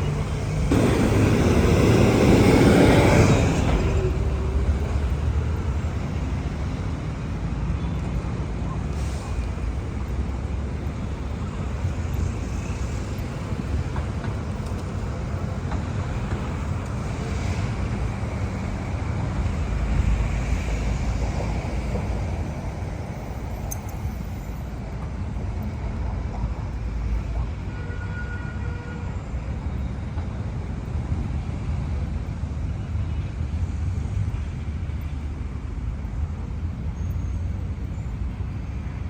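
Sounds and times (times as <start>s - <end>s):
vehicles passing by: 0.0s - 27.7s
low rumble of traffic: 0.0s - 39.0s.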